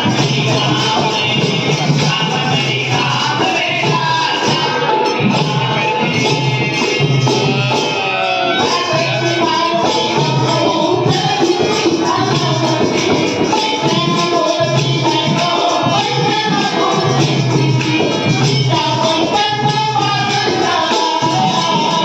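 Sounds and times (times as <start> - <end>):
group singing devotional song: 0.0 - 22.0
jingling percussion: 0.0 - 22.0.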